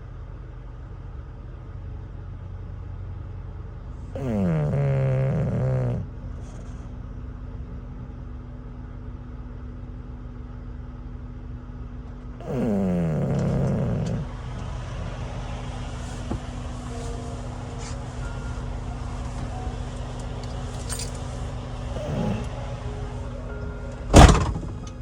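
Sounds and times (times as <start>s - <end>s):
low engine hum: 0.0s - 25.0s
dog snoring: 4.0s - 7.0s, 12.4s - 15.3s, 16.0s - 18.7s, 20.7s - 23.1s.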